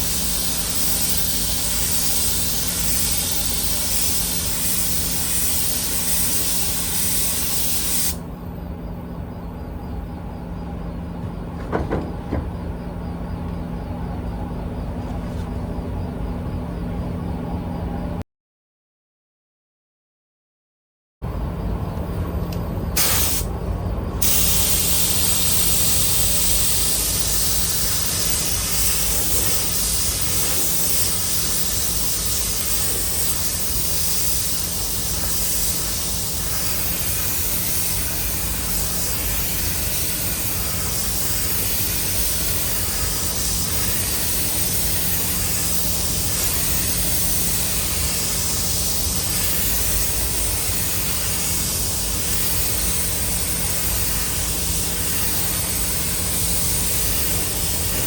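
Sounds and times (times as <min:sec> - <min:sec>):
paint spray gun hissing: 0:00.0 - 0:08.2, 0:23.0 - 0:23.5, 0:24.2 - 0:58.0.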